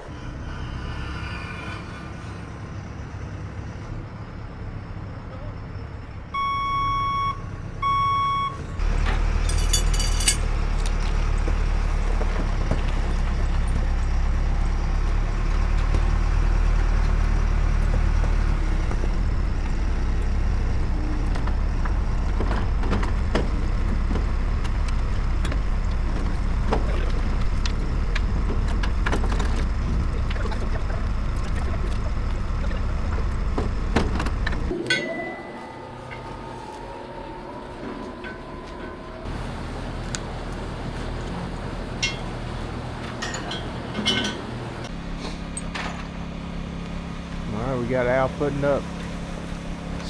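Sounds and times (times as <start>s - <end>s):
heavy vehicle engine rumbling: 0.0s - 50.0s
high beeping tone: 6.4s - 8.6s
metal clanks and knocks: 8.8s - 11.0s, 42.0s - 44.9s.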